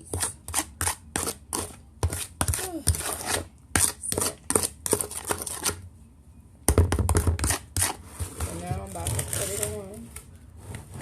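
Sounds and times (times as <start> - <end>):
utensil scraping a dish: 0.0 - 5.8, 7.4 - 11.0.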